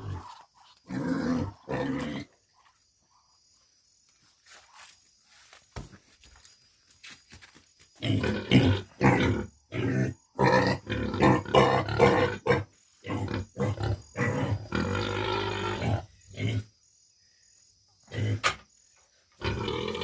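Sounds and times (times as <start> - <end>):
farm animals grunting: 0.0 - 2.7, 8.0 - 16.8, 18.0 - 18.7, 19.3 - 20.0.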